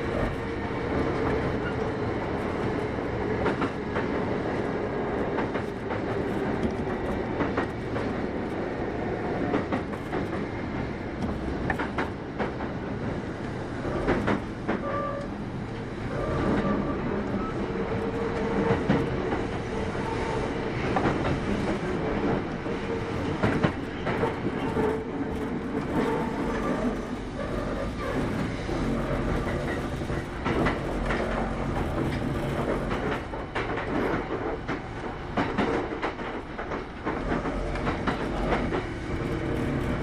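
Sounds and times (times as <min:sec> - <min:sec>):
train rumble inside carriage: 0:00.0 - 0:40.0
wheels clicking over rail joints: 0:20.8 - 0:40.0.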